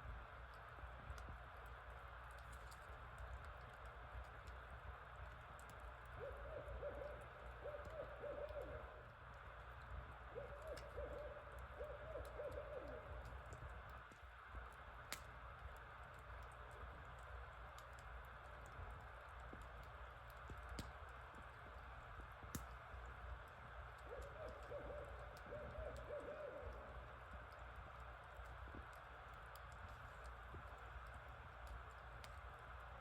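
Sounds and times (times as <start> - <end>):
owls hooting: 6.2 - 9.1, 10.3 - 13.5, 24.0 - 27.2.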